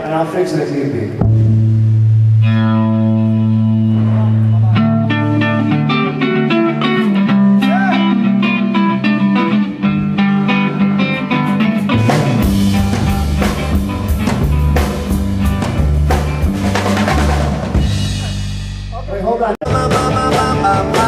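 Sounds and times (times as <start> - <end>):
drums and bass beat: 1.2 - 5.6, 11.5 - 21.0
electric guitar picking notes: 1.2 - 18.5, 19.6 - 21.0.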